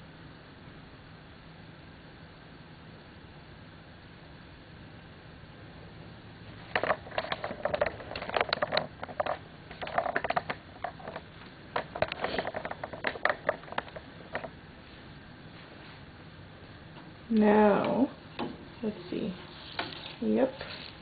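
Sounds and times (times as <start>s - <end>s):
faint steady hiss: 0.0s - 21.0s
utensil scraping frying pan: 19.4s - 21.0s.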